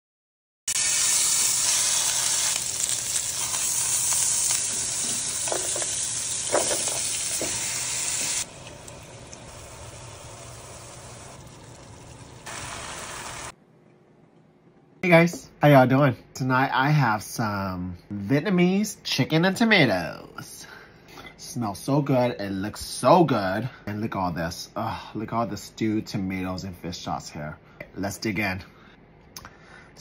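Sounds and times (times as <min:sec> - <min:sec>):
chicken sizzling in a pan: 0:00.7 - 0:13.5.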